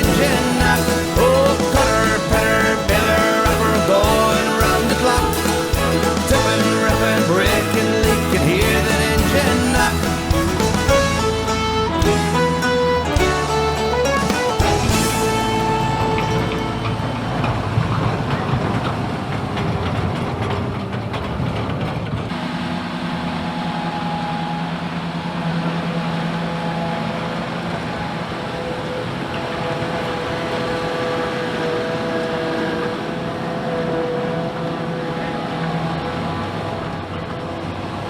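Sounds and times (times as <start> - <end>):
machinery whining: 0.0 - 38.0
tractor engine drone: 0.0 - 38.0.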